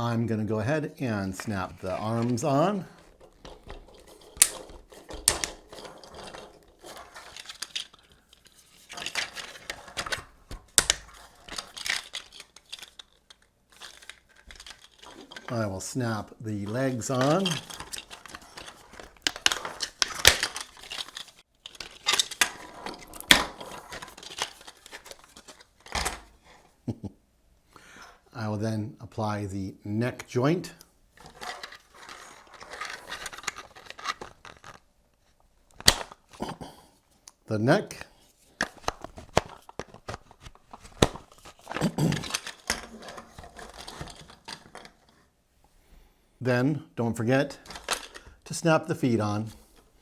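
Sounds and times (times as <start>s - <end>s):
plastic parts clicking together: 1.4s - 15.6s, 16.6s - 26.4s, 31.2s - 34.9s, 35.7s - 36.5s, 38.6s - 45.2s, 47.6s - 48.4s
plastic rustling: 1.4s - 26.6s, 31.2s - 34.9s, 38.3s - 45.3s, 47.6s - 48.5s.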